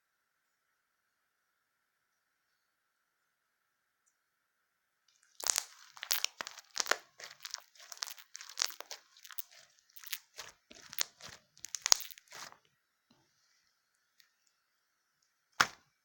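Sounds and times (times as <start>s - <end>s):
crunchy slime squished: 5.2s - 12.7s.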